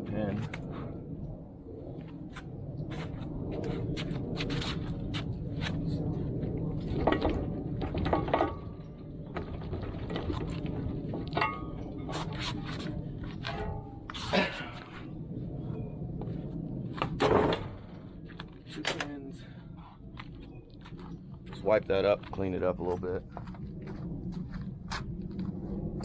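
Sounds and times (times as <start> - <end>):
low rumble: 0.0 - 26.0
metal knocks and clanks: 7.0 - 11.8, 13.4 - 14.2.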